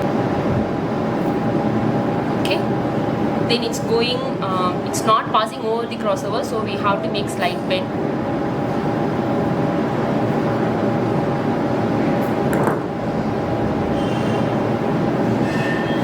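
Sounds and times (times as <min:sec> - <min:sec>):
faint steady hum: 0:00.0 - 0:16.0
machine drone: 0:07.6 - 0:16.0.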